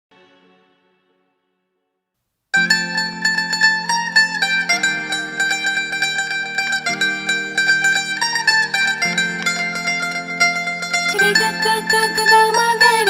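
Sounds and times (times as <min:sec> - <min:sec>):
plucked string melody: 0:02.6 - 0:13.0.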